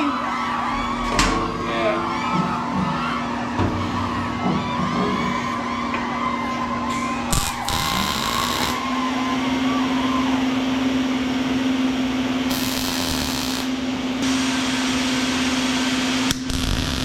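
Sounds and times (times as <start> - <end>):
metalworking tool humming and hissing: 0.0 - 17.0.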